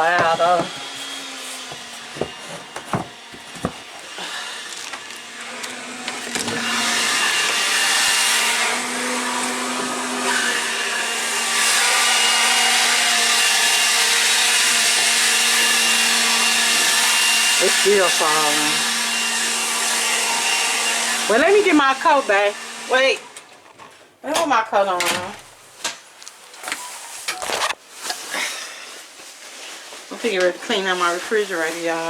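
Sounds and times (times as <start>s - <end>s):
leaf blower motor whirring: 0.0s - 23.4s.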